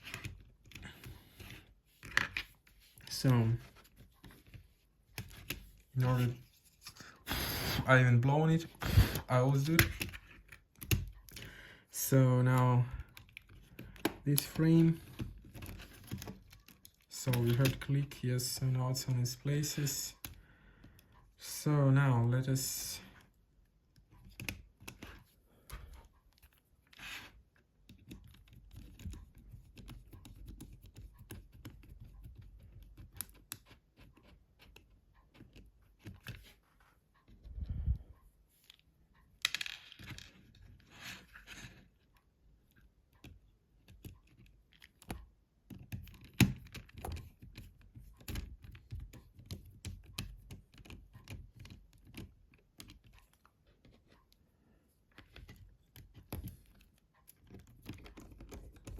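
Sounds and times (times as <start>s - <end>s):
plastic parts clicking and tapping: 0.0s - 7.0s, 9.2s - 11.5s, 12.9s - 18.2s, 23.1s - 36.6s, 38.6s - 54.4s, 55.1s - 58.9s.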